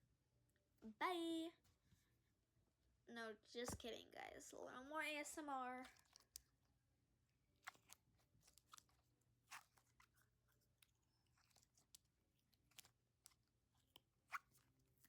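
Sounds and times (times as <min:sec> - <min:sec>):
squishy toy crackles and clicks: 0:05.8 - 0:06.6, 0:07.6 - 0:15.0.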